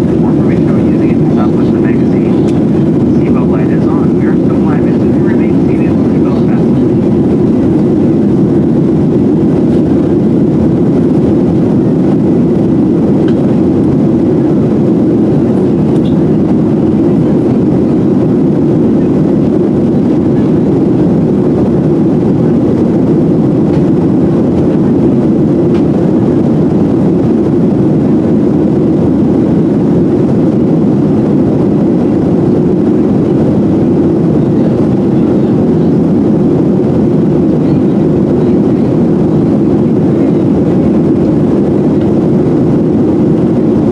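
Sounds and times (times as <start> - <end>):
airliner cabin noise: 0.0 - 43.9.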